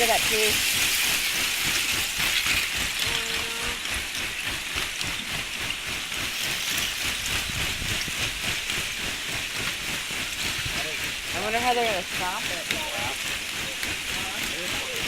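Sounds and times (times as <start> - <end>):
ice plates tinkling: 0.0 - 4.7
lake ice grinding and crackling: 0.0 - 15.0.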